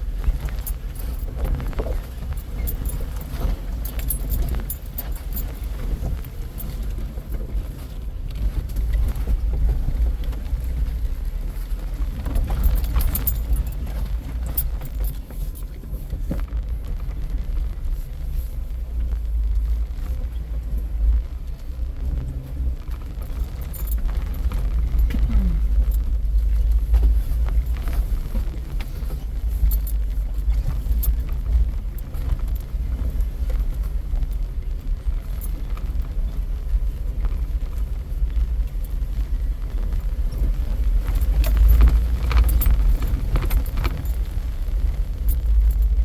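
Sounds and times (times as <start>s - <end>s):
vehicle engine rumbling: 0.0s - 46.0s
rattles and knocks: 0.2s - 7.5s, 12.1s - 17.8s.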